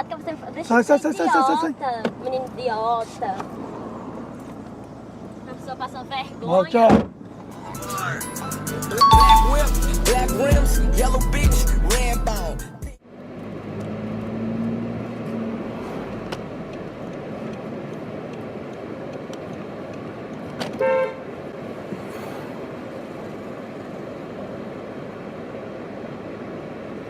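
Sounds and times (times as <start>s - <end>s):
street traffic: 0.0s - 27.0s
car horn toot: 9.0s - 9.8s, 20.7s - 21.3s.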